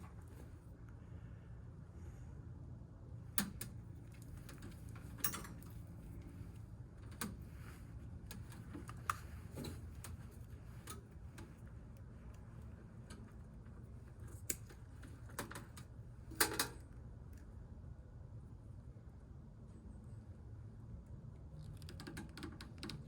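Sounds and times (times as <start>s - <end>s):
tools and parts clicking: 4.4s - 5.8s, 14.3s - 16.8s.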